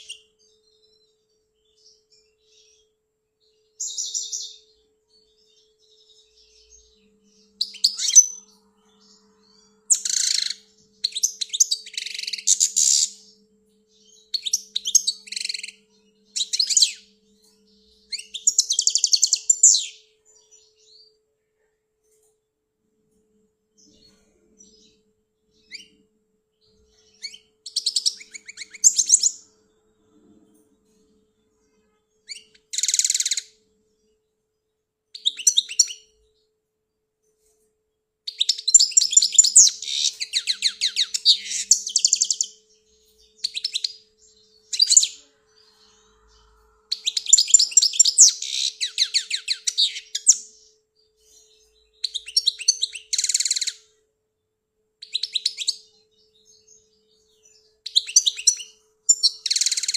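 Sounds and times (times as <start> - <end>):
goldfinch twittering song: 3.8 - 20.9, 26.6 - 29.6, 32.3 - 33.6, 38.3 - 54.0, 55.0 - 59.9.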